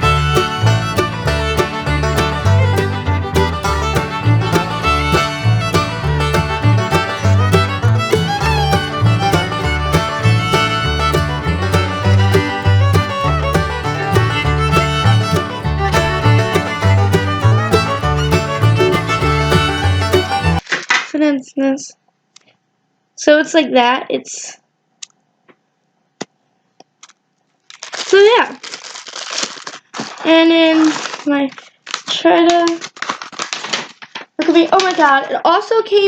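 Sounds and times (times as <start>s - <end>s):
upbeat bluegrass tune with fiddle: 0.0s - 20.6s.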